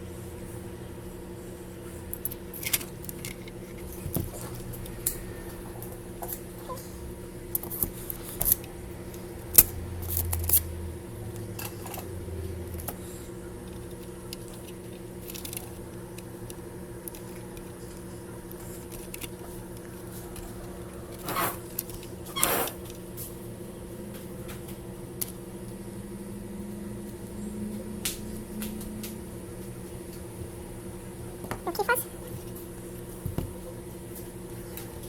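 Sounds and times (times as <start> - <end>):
steady electrical hum: 0.0 - 35.0
small clicks and handling noises: 13.6 - 20.5.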